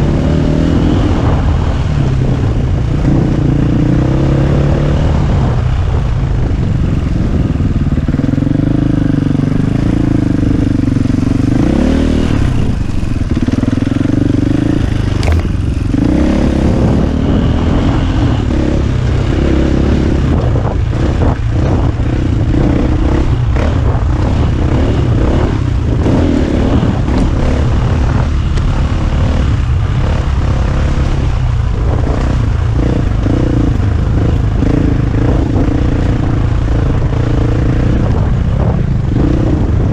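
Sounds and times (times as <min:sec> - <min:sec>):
motorcycle engine under load: 0:00.0 - 0:39.9
motorcycle knocks and rattles: 0:06.4 - 0:17.0.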